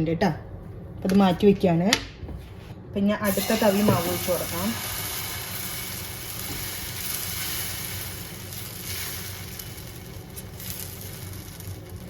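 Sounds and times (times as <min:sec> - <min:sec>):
batter sizzling on hot pan: 0:03.3 - 0:12.0.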